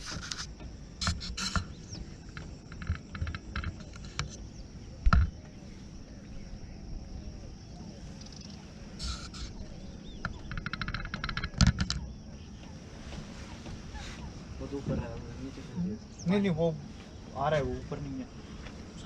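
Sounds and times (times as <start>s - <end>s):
rapid clicking: 9.0s - 12.2s.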